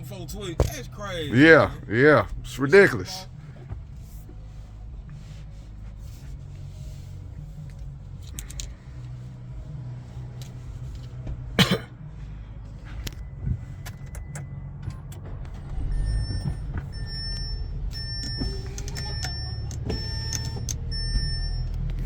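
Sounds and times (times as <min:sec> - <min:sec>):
car engine idling: 0:00.0 - 0:22.0
loud short cough-like burst: 0:11.6 - 0:11.9
high electronic beep: 0:15.8 - 0:21.7.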